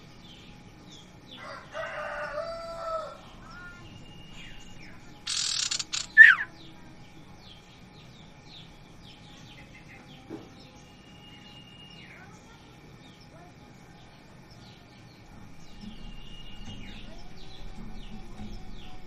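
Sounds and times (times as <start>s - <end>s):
small songbirds chirping: 0.0s - 19.0s
rooster crowing: 1.3s - 3.5s
wing flutter: 5.2s - 6.5s.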